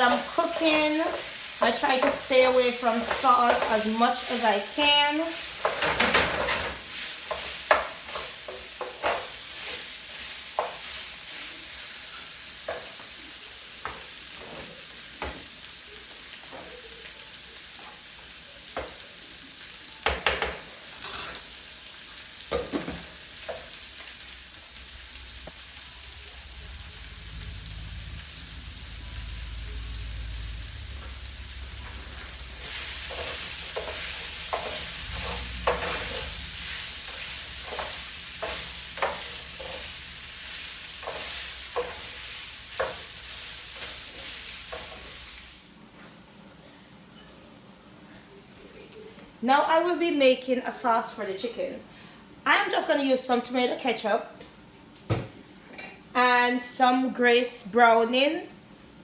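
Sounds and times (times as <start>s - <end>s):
beans sizzling in a pot: 0.0s - 46.4s
spoon knocking and scraping pot: 5.6s - 9.3s, 33.0s - 36.3s
low hum: 24.7s - 33.2s.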